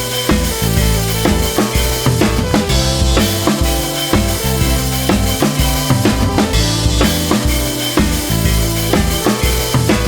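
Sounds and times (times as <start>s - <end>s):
music with drum beat and bass: 0.0s - 10.0s.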